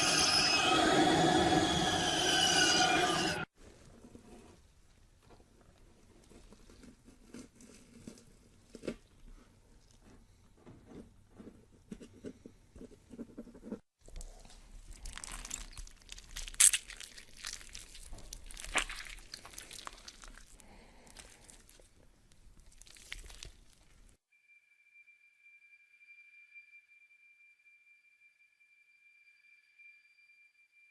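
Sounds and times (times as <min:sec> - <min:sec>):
crunching and tearing: 0:14.0 - 0:24.2.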